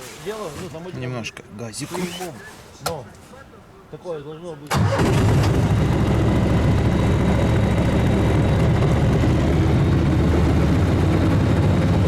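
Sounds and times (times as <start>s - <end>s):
vehicle engine running: 5.1s - 12.0s.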